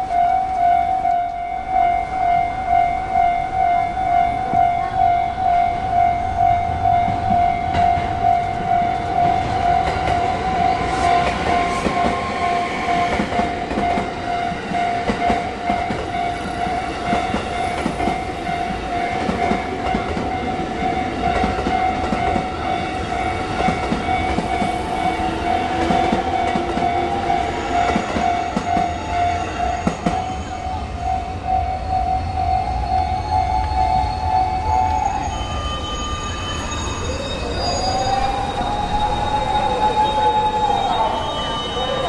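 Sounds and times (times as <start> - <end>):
train wheels clattering on rails: 6.7 - 31.6.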